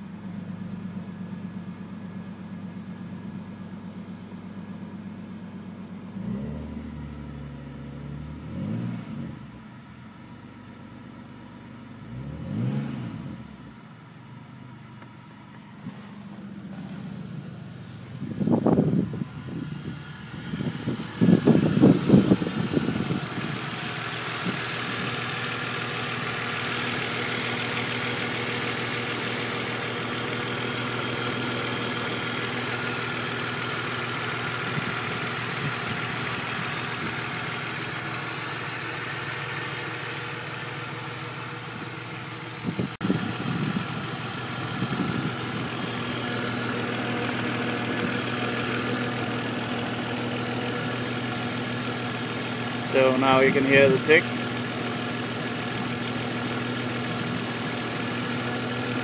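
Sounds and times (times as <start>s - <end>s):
car engine idling: 0.0s - 8.6s, 9.3s - 12.6s, 13.2s - 59.0s
fast light engine ticking: 16.8s - 59.0s.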